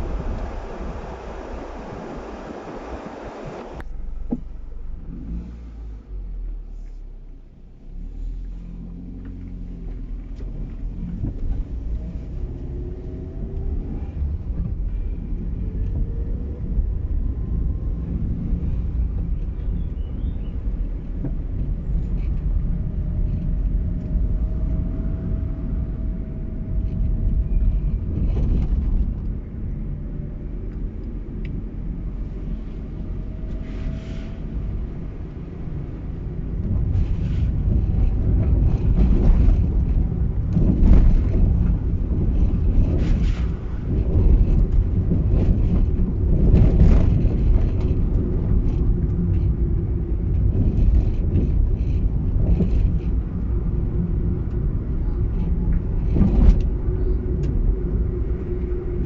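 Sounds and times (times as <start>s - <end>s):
car engine and road rumble: 0.0s - 59.0s.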